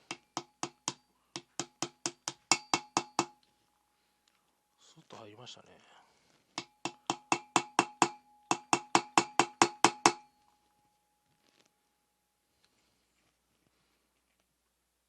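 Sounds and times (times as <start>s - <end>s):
hammer striking metal: 0.0s - 3.4s, 6.6s - 10.3s.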